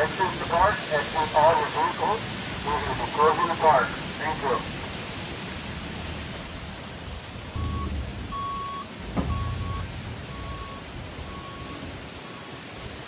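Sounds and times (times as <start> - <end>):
low rumbles: 4.0 - 13.0
vehicle backup alarm beeping: 6.5 - 13.0.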